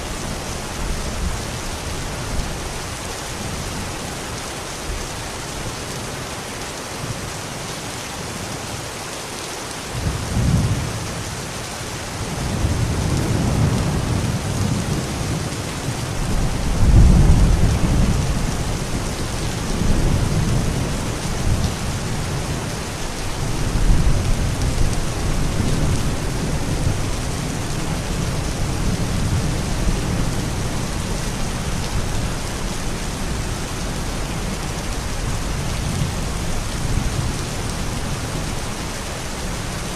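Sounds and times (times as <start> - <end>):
steady rain falling: 0.0 - 39.9
thunder rumbling: 16.2 - 22.7.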